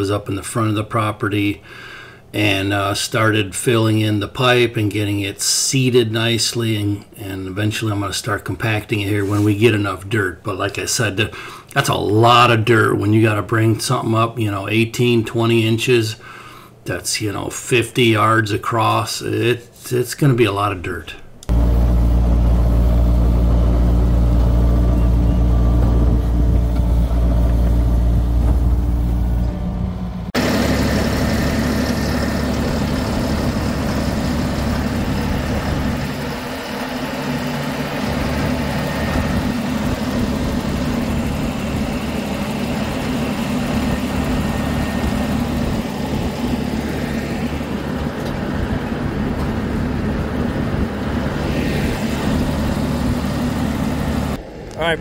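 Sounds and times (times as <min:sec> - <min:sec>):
heavy equipment engine running: 0:21.5 - 0:54.4.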